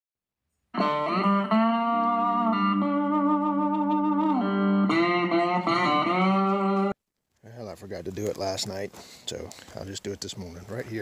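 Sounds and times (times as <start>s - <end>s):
sliding guitar notes: 0.7s - 7.0s.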